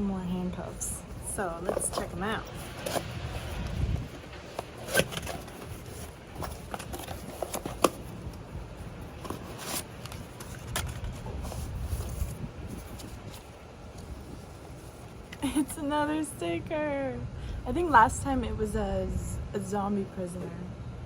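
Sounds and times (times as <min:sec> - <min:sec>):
packaging rustling and crinkling: 0:00.7 - 0:15.5.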